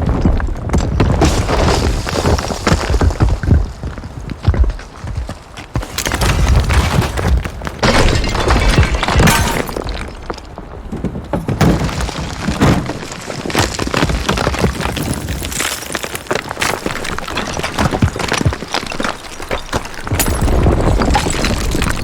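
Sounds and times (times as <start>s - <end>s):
building collapse crashes: 0.1s - 3.7s, 5.8s - 22.0s
debris shattering: 5.8s - 10.6s, 11.3s - 22.0s.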